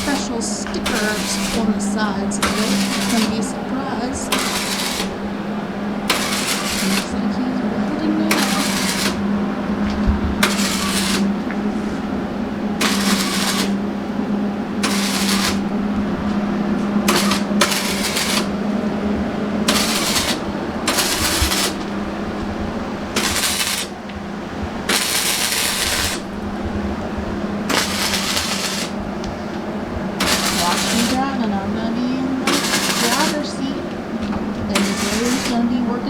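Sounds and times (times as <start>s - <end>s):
arc welding crackling: 0.0s - 36.0s
steady low hum: 0.0s - 36.0s.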